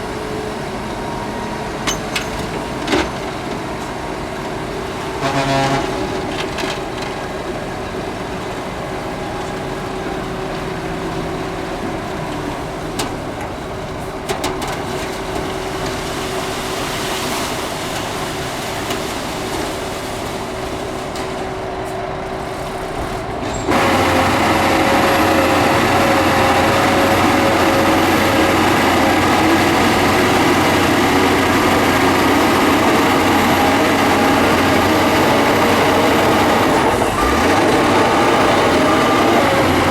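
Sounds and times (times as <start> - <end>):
heavy machinery diesel engines: 0.0 - 39.9.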